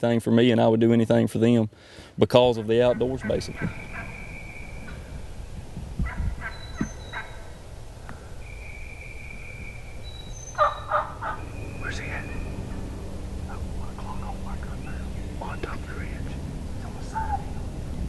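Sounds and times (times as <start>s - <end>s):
turkey gobbling: 2.6s - 5.1s, 6.1s - 7.6s, 10.5s - 12.5s, 17.0s - 17.6s
songbirds whistling: 3.1s - 12.8s.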